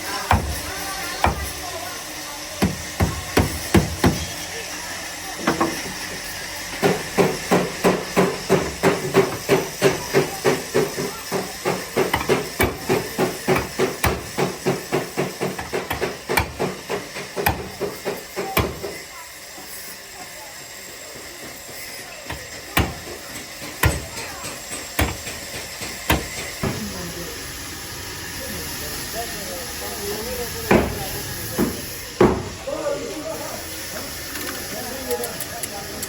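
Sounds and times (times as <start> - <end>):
hammer ringing on sheet metal: 6.8 - 19.0, 22.3 - 26.8.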